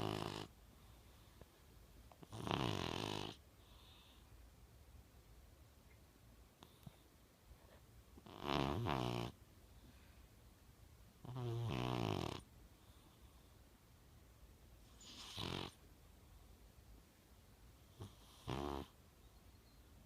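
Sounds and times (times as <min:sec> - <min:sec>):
cat snoring: 0:00.0 - 0:00.6, 0:02.2 - 0:04.2, 0:08.2 - 0:09.4, 0:11.2 - 0:12.5, 0:14.9 - 0:15.8, 0:17.9 - 0:19.0.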